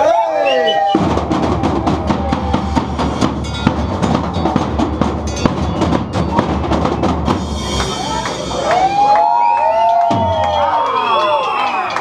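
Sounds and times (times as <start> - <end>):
street percussion band drumming: 0.8 - 11.0
deep bass drums: 1.0 - 10.7.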